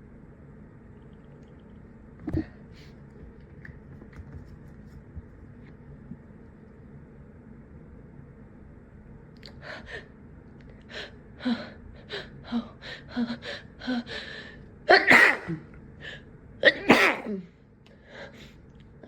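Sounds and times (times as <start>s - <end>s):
person sneezing: 14.9s - 15.7s, 16.7s - 17.4s.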